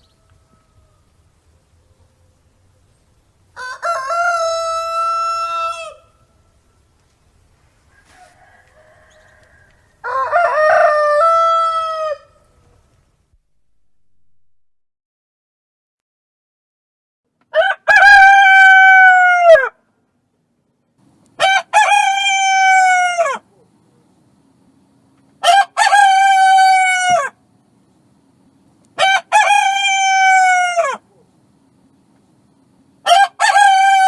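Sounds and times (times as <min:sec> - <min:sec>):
rooster crowing: 0:00.0 - 0:06.9, 0:07.8 - 0:12.9, 0:17.5 - 0:19.8, 0:21.4 - 0:23.5, 0:25.4 - 0:27.4, 0:29.0 - 0:31.0, 0:33.0 - 0:34.0.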